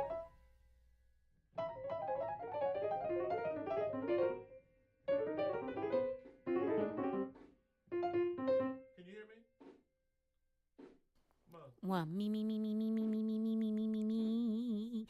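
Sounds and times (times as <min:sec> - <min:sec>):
solo piano music: 0:00.0 - 0:00.4, 0:01.6 - 0:09.0.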